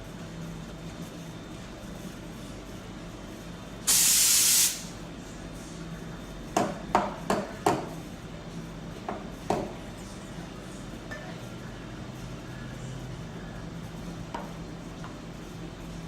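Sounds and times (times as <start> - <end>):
steam wand hissing: 3.9 - 4.9.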